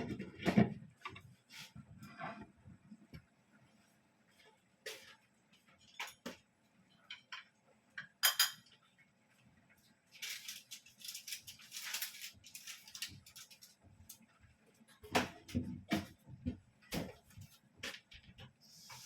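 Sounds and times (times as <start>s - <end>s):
utensils clinking on cookware: 7.0s - 8.7s.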